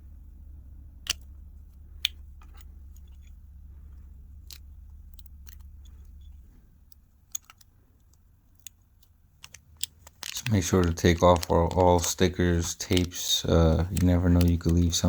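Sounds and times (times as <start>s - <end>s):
low hum: 0.0s - 15.0s
small tools clicking and tapping: 4.4s - 15.0s.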